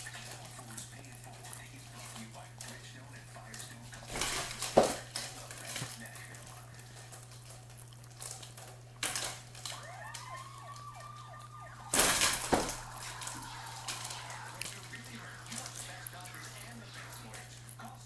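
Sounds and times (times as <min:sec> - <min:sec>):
steady low hum: 0:00.0 - 0:18.0
siren wailing: 0:09.5 - 0:16.8.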